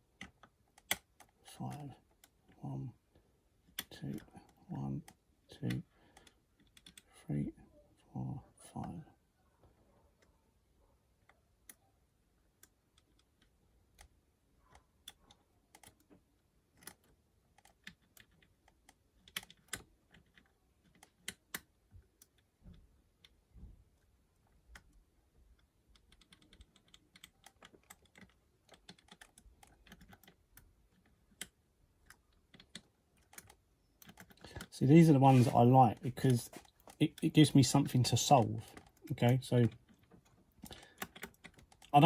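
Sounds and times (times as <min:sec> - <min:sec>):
lock pick clicking in lock: 0:25.9 - 0:34.7, 0:39.8 - 0:41.9.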